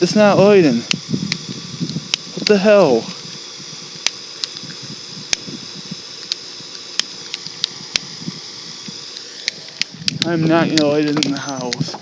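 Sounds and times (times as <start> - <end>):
steady hiss: 0.0 - 12.0
lighter clicking: 0.8 - 2.6, 3.3 - 11.8.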